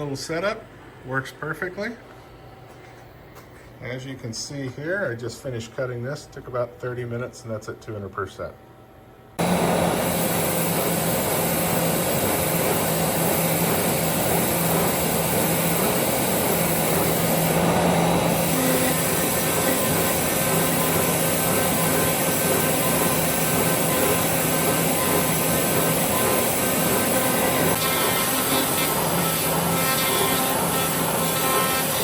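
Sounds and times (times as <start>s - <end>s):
cnc router running: 9.4s - 32.0s.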